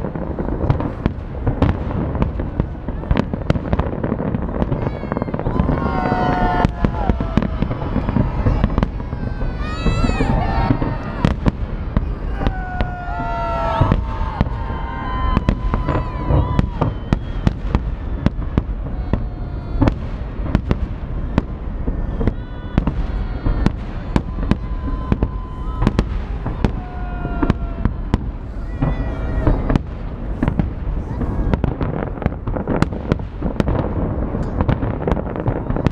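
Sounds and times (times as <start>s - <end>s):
fireworks bangs and crackles: 0.0s - 35.9s
people calling out: 4.6s - 17.6s, 22.2s - 29.8s.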